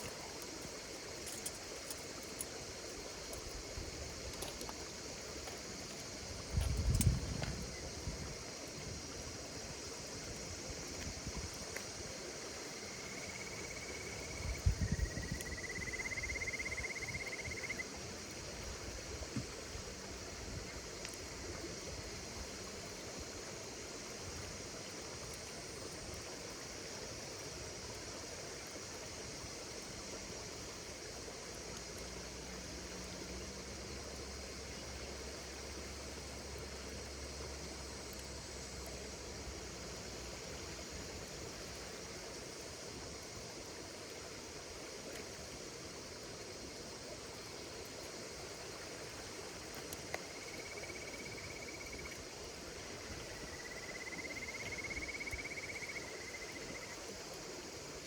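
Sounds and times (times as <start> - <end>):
campfire crackling and popping: 0.0 - 9.0
insects calling: 0.0 - 58.0.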